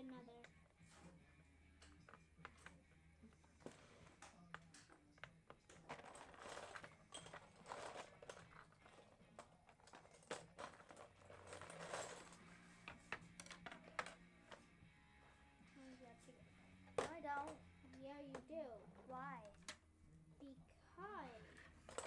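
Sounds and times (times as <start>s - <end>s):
rummaging clatter of blocks: 5.7s - 14.2s.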